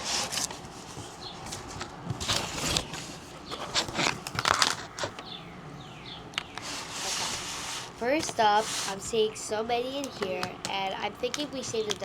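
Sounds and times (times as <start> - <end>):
packaging rustling and crinkling: 0.0 - 5.3.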